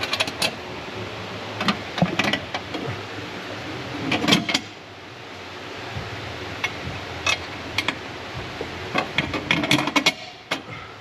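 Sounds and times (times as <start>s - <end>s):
hand tools clicking and clanking: 0.0s - 0.6s, 8.9s - 10.7s
steady hiss: 0.0s - 11.0s.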